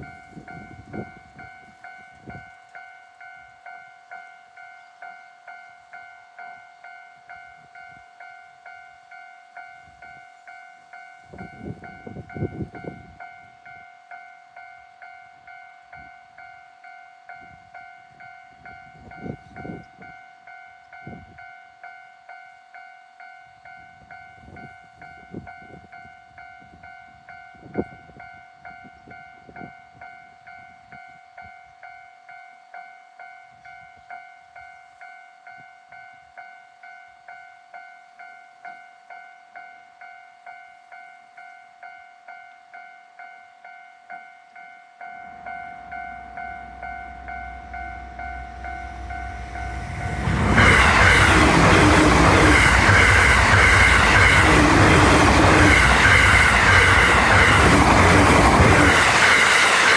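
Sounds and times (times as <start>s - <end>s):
train rumbling and clattering: 11.2s - 13.6s, 45.2s - 59.9s.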